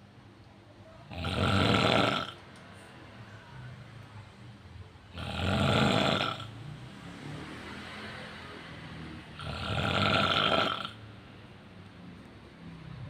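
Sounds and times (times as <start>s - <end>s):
man snoring: 1.1s - 2.4s, 5.1s - 6.5s, 9.4s - 11.0s.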